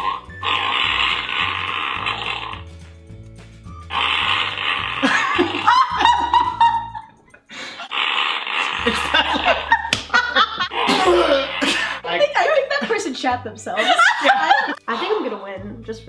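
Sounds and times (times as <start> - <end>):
fart sound effect: 0.0 - 2.7, 3.9 - 5.6, 7.9 - 9.7
people laughing: 5.0 - 7.8, 8.8 - 15.2.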